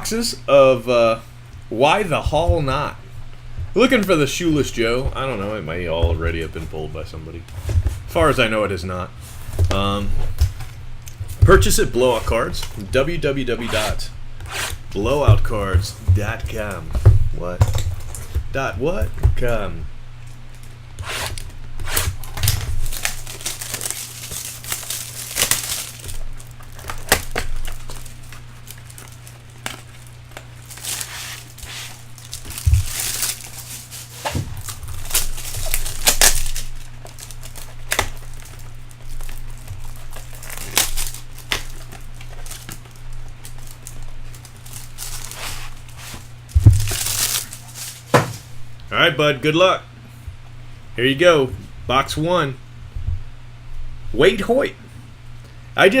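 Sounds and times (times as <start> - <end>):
handling knocks: 15.0 - 19.6, 46.5 - 48.6
plastic wrapping crinkling and tearing: 20.2 - 48.7.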